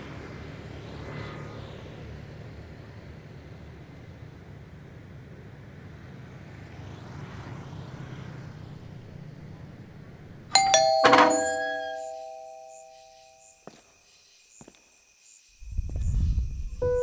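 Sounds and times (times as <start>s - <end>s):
doorbell chiming: 10.6s - 13.5s.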